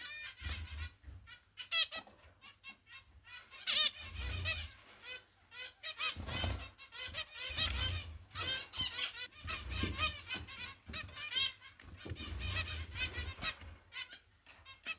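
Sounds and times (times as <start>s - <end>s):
finch chicks begging calls: 0.0s - 14.9s.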